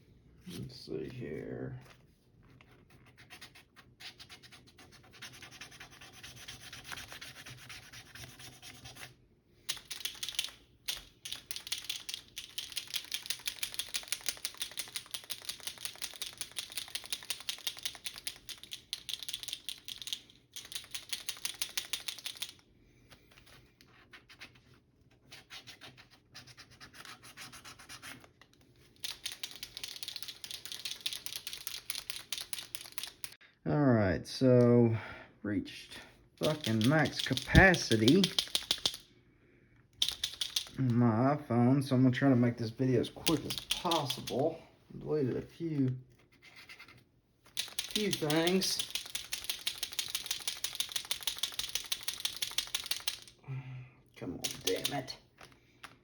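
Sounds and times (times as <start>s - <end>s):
paint pen ball rattling: 9.7s - 22.6s, 29.0s - 33.4s, 36.4s - 39.0s, 40.0s - 40.8s, 43.2s - 44.5s, 47.5s - 53.4s, 54.4s - 55.6s.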